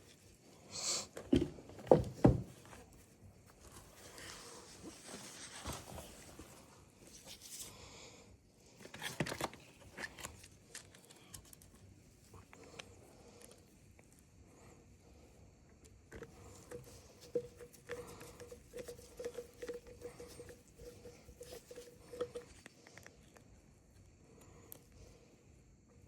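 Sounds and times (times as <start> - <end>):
small parts clicking and tapping: 15.7 - 23.5.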